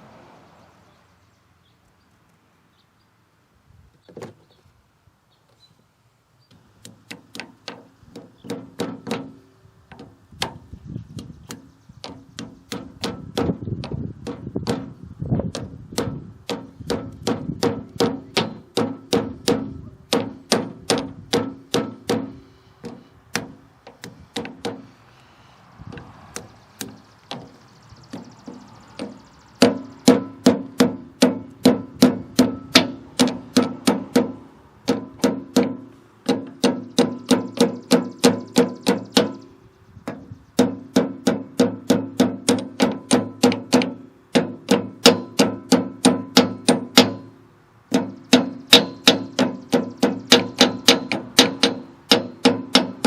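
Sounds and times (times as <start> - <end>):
hammer tapping metal: 15.5 - 24.9, 26.0 - 39.4, 40.1 - 47.3, 47.9 - 53.0.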